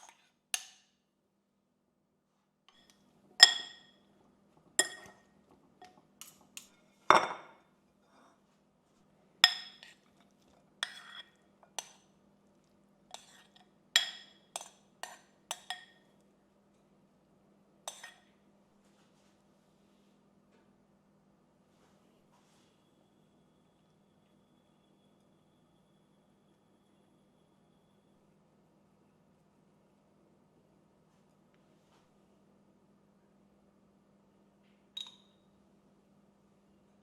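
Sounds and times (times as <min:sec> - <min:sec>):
dishes and glassware clinking: 0:02.8 - 0:04.1, 0:04.8 - 0:07.6, 0:09.4 - 0:10.0, 0:13.2 - 0:16.0, 0:17.9 - 0:18.3, 0:35.0 - 0:35.4.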